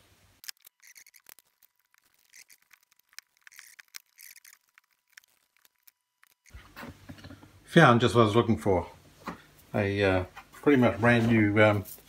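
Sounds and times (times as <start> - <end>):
small objects clicking: 0.4 - 6.6
objects rustling: 0.4 - 7.5.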